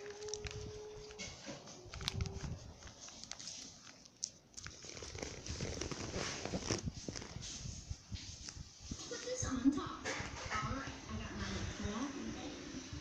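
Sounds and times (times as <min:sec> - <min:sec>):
snack packaging crinkling: 0:00.0 - 0:07.5.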